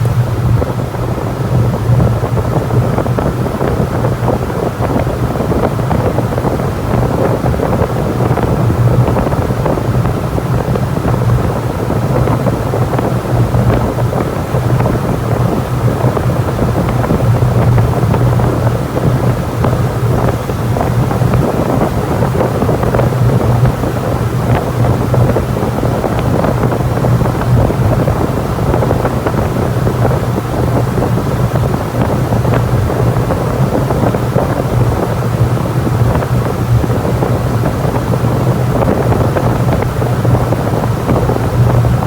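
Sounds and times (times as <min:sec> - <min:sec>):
constant low hum: 0:00.0 - 0:42.0
rush of moving air: 0:00.0 - 0:42.0.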